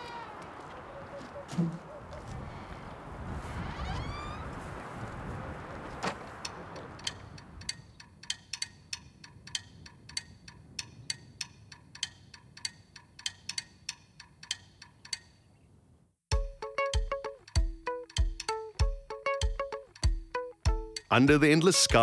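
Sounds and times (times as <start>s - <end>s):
sharp ringing ticks: 6.4s - 15.5s.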